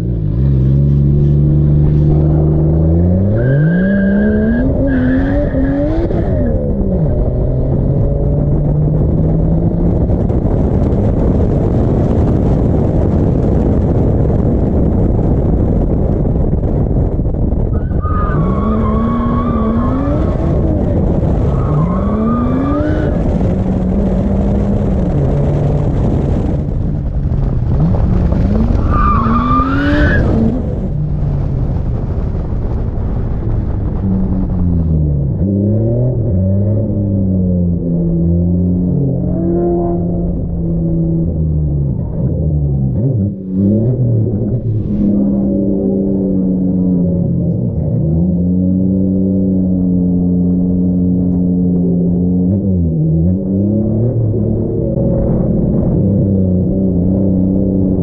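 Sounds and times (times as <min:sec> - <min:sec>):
car engine revving hard: 0:18.1 - 0:26.6.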